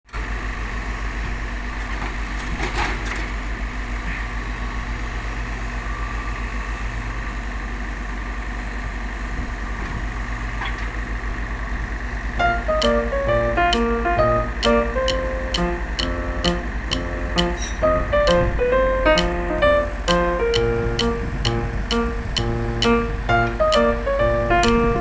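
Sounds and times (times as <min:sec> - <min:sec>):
diesel engine running: 0:07.6 - 0:25.0.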